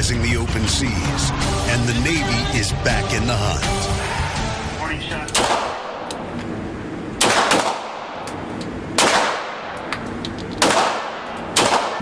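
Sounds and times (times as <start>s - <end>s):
gunshots with ringing echo: 5.3s - 6.1s, 7.2s - 8.2s, 8.9s - 9.8s, 10.6s - 12.0s.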